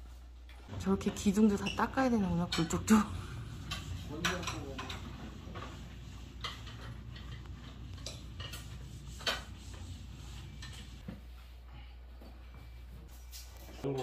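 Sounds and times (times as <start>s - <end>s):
steady low hum: 0.0s - 13.2s.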